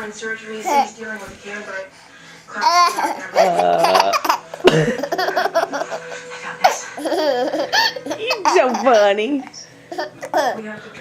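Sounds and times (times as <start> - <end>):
baby coughing: 2.6 - 5.3
baby laughing: 2.6 - 10.6.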